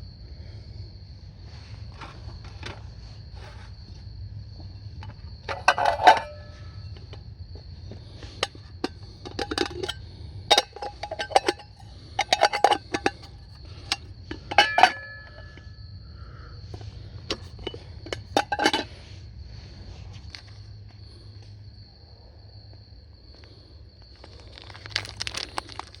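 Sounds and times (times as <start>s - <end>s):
metal cookware clinking and knocking: 5.4s - 6.7s, 8.8s - 15.8s, 17.3s - 18.9s.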